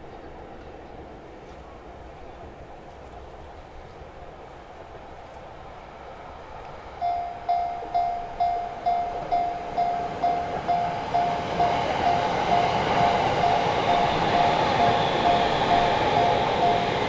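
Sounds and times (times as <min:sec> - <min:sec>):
train rumble approaching: 0:00.0 - 0:17.0
level crossing bell clanging: 0:07.0 - 0:17.0.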